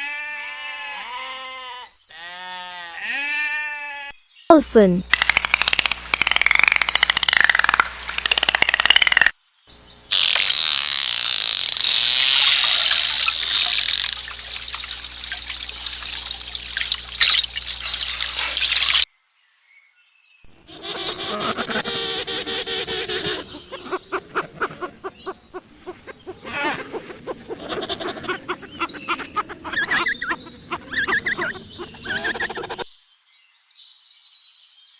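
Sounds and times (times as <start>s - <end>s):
dolphin clicks: 5.0s - 9.3s, 10.1s - 19.1s, 21.2s - 32.8s
hissy watery noise: 10.1s - 19.1s, 20.8s - 32.8s
dolphin whistles: 20.5s - 32.8s
chirping: 20.5s - 32.9s.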